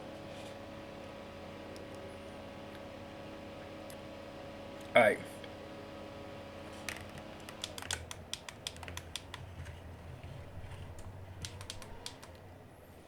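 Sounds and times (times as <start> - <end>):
mechanical keyboard clacks: 6.9 - 9.5, 11.0 - 12.4.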